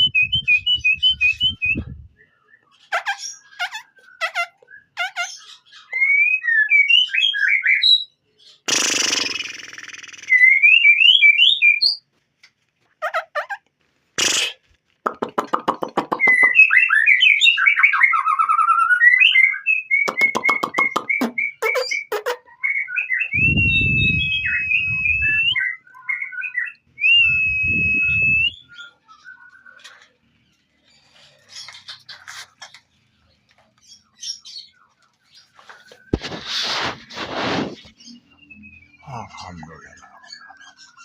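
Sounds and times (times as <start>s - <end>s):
birds chirping and trilling: 0.0s - 8.7s, 15.4s - 27.0s, 28.2s - 41.0s
long whistled notes: 23.3s - 25.6s.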